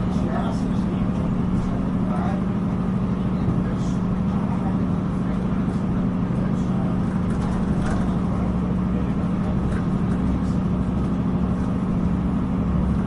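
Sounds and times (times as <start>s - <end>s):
train interior hum: 0.0s - 13.0s
wheels rumbling on track: 0.0s - 13.0s.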